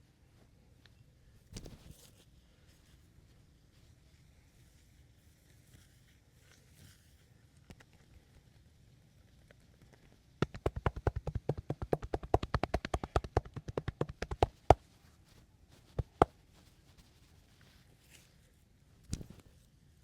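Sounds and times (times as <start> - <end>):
hands slapping on a body: 10.4 - 14.8, 15.9 - 16.4.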